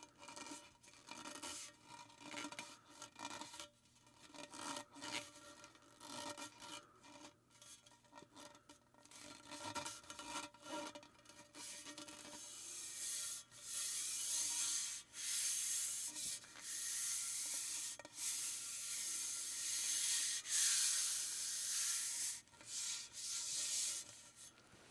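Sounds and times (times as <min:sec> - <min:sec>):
hissing rub strokes: 0:12.2 - 0:24.9.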